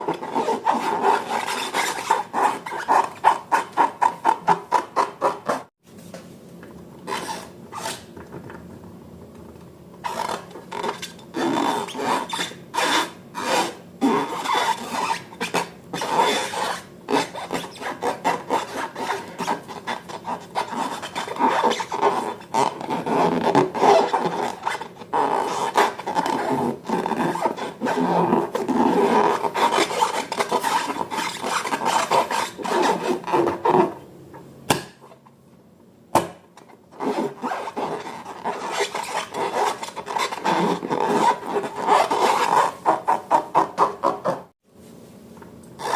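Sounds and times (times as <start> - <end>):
balloons and slime rubbing: 10.0 - 33.9, 37.0 - 44.5.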